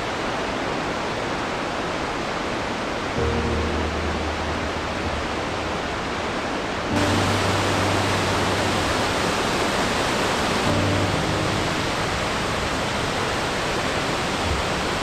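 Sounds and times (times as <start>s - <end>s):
waterfall roaring: 0.0s - 15.0s
soft background music: 3.2s - 13.2s.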